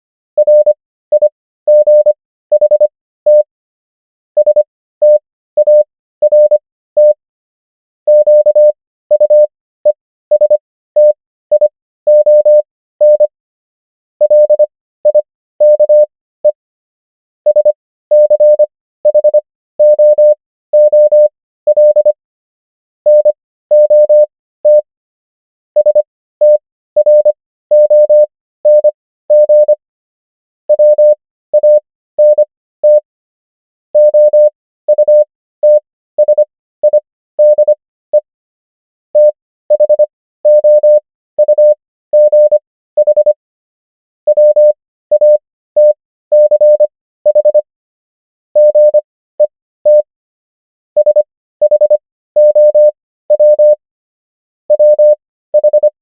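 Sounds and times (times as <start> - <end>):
morse code tone: 0.4 - 3.5, 4.4 - 7.2, 8.1 - 13.3, 14.2 - 16.6, 17.5 - 22.2, 23.1 - 24.9, 25.8 - 29.8, 30.7 - 33.1, 34.0 - 38.3, 39.2 - 43.4, 44.3 - 47.7, 48.6 - 50.1, 51.0 - 53.8, 54.7 - 56.0.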